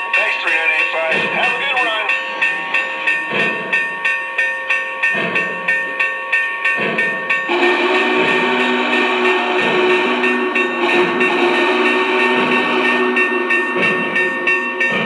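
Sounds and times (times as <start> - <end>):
steam chuffing: 6.6 - 15.0
multi-tone steam whistle: 7.4 - 15.0.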